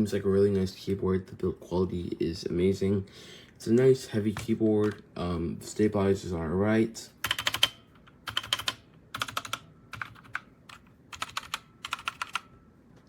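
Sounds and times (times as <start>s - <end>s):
mechanical keyboard typing: 7.2s - 12.5s.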